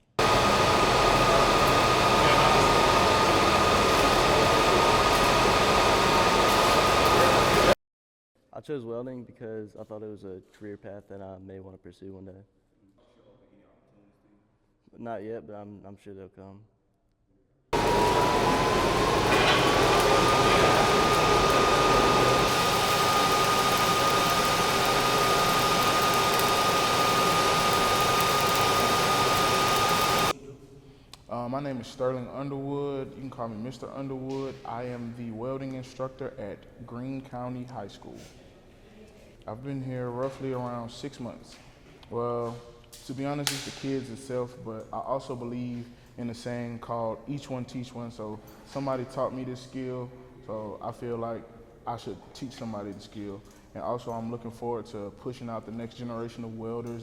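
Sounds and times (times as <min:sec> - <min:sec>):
thin high whine: 0:00.0 - 0:07.8, 0:17.8 - 0:30.3
welding hiss and rush: 0:00.2 - 0:07.8, 0:17.8 - 0:30.3.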